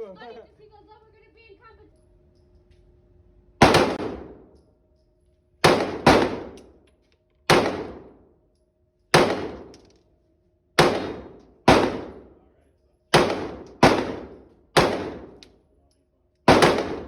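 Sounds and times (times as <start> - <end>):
pistol shots with ringing echo: 3.6 - 4.6, 5.6 - 6.8, 7.5 - 8.4, 9.1 - 9.9, 10.8 - 12.5, 13.1 - 15.6, 16.4 - 17.0.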